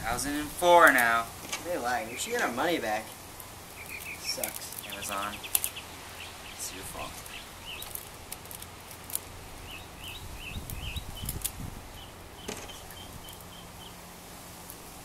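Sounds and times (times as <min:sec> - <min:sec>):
small bird chirping: 0:01.9 - 0:08.2, 0:09.1 - 0:14.0.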